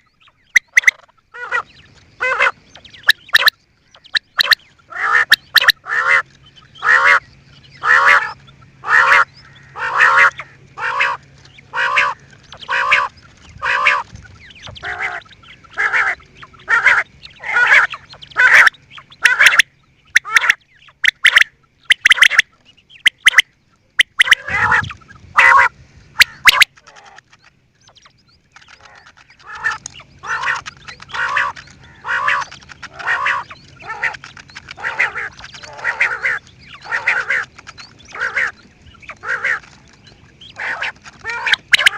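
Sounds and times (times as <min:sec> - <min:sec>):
faint steady hum: 0:00.0 - 0:41.9
quail calling: 0:00.0 - 0:41.9.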